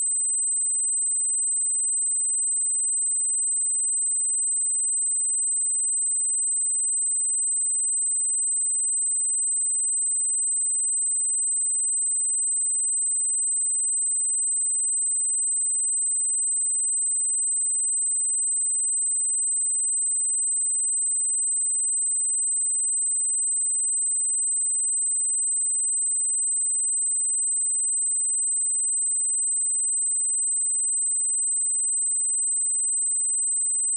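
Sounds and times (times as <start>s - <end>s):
high-pitched sine test tone: 14.8s - 33.9s.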